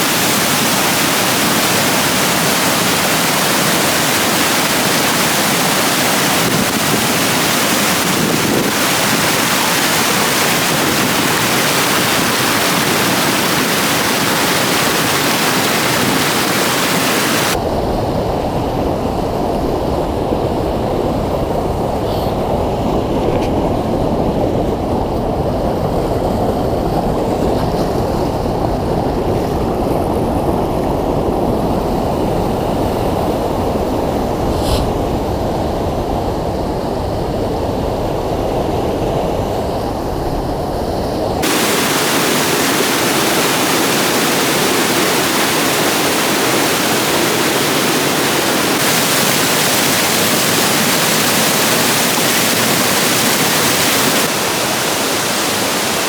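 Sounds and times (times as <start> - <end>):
waterfall rushing: 0.0 - 17.6, 41.4 - 56.0.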